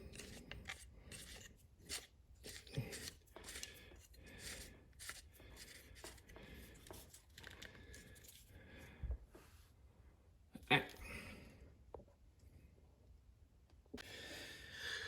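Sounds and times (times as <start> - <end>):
tool attachment clicks and scrapes: 0.0 - 6.2.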